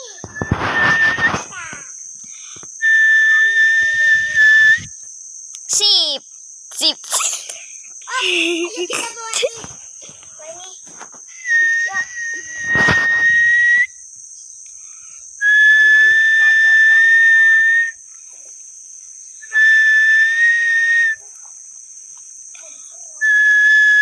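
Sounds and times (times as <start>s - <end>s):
person whistling long notes: 0.3s - 1.4s, 2.8s - 4.9s, 11.3s - 14.0s, 15.4s - 18.0s, 19.4s - 21.2s, 23.2s - 24.0s.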